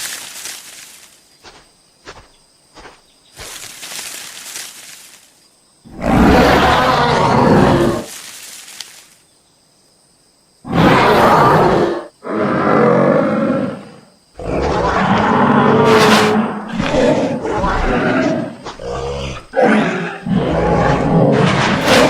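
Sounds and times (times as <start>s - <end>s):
large animal roaring: 5.9s - 8.1s, 10.7s - 22.0s.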